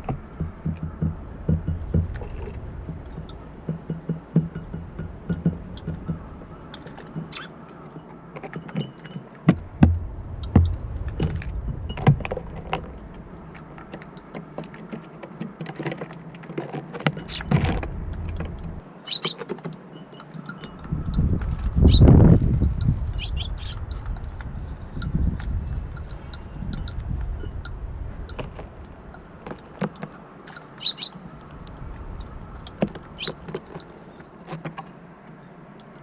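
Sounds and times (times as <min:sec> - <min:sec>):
wind buffeting microphone: 0:00.0 - 0:15.6, 0:17.0 - 0:18.8, 0:20.4 - 0:34.4
birds pecking at feed: 0:00.0 - 0:36.0
sparrow chirps: 0:00.2 - 0:14.3, 0:17.2 - 0:34.4.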